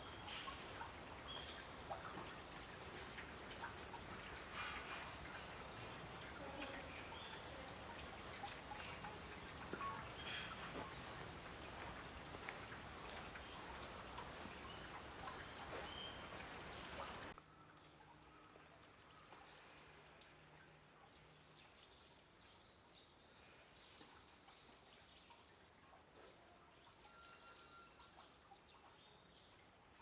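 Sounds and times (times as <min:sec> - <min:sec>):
quiet outdoor background noise: 0:00.0 - 0:30.0
faint bird chirps: 0:06.3 - 0:11.1, 0:26.2 - 0:29.6.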